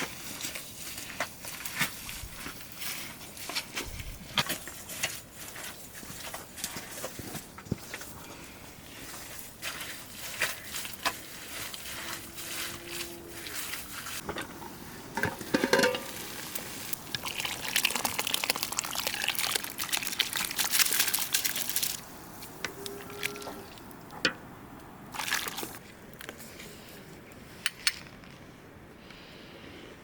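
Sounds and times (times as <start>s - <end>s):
kitchen things clinking and knocking: 14.2s - 16.2s
liquid pouring: 15.9s - 21.9s.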